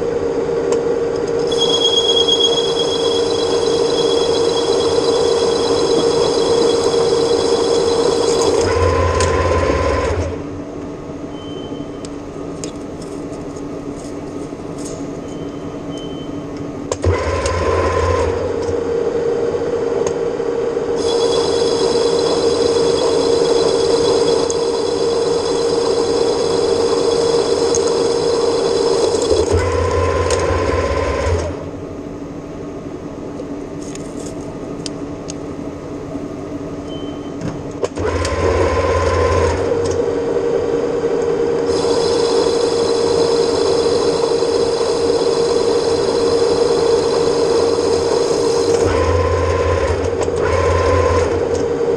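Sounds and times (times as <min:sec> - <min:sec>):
high steady whine: 0:00.0 - 0:11.1, 0:17.9 - 0:32.4, 0:38.8 - 0:51.9
metal lathe running: 0:01.4 - 0:10.3, 0:21.0 - 0:31.4, 0:41.6 - 0:51.2.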